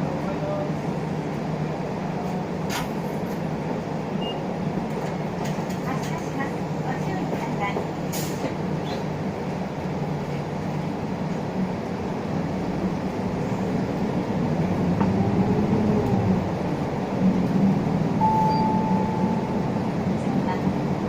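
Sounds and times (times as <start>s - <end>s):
bus diesel engine running: 0.0s - 21.0s
road noise: 0.0s - 21.0s
short steady beep: 18.2s - 19.7s.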